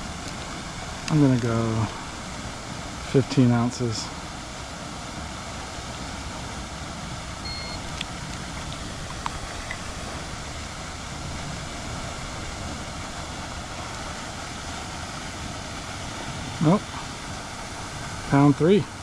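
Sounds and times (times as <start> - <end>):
outdoor background noise: 0.0 - 19.0
short high electronic beep: 7.4 - 7.8.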